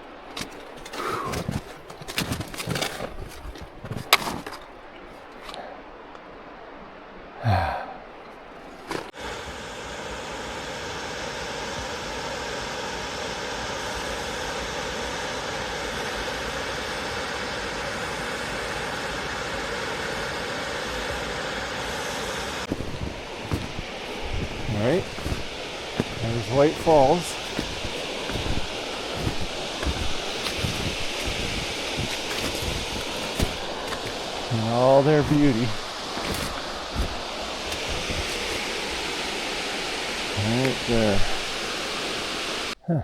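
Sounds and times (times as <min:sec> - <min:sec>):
person breathing hard: 0:00.9 - 0:01.7, 0:07.4 - 0:08.2, 0:22.0 - 0:38.9
person sighing: 0:07.4 - 0:08.1
waterfall rushing: 0:18.2 - 0:42.8.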